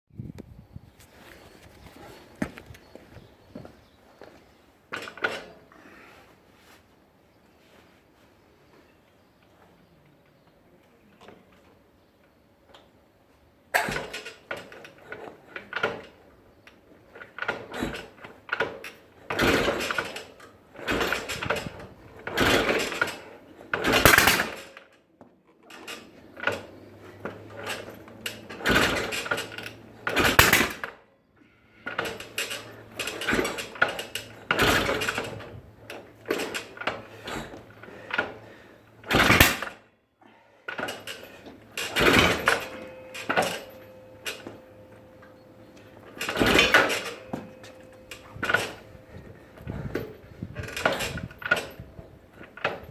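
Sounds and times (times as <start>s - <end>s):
motorcycle engine kick cranking: 17.2s - 24.8s, 25.8s - 31.0s, 31.8s - 39.8s, 40.7s - 52.9s.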